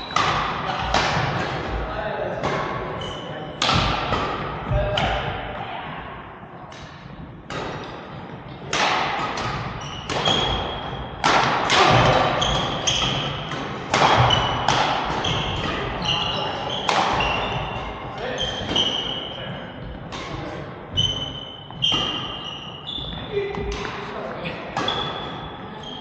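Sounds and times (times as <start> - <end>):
shoe squeaks: 0.0 - 0.9, 3.0 - 3.6, 9.8 - 11.2, 12.0 - 13.5, 14.1 - 19.7, 20.9 - 23.5, 24.8 - 26.0
rackets hitting shuttlecock: 0.0 - 1.8, 2.4 - 5.4, 6.7 - 25.5.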